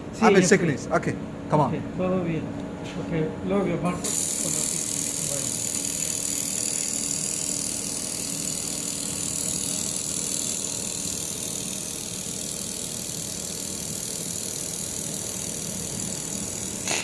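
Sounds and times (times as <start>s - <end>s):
welder low hum: 3.9s - 17.0s
laser welder hissing: 4.0s - 17.0s.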